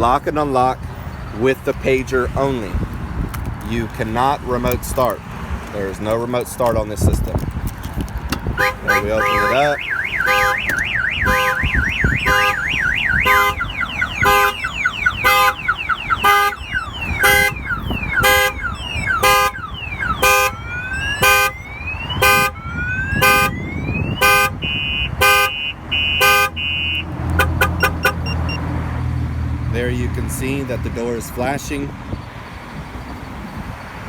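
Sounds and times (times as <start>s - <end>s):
car alarm siren: 8.6s - 28.6s.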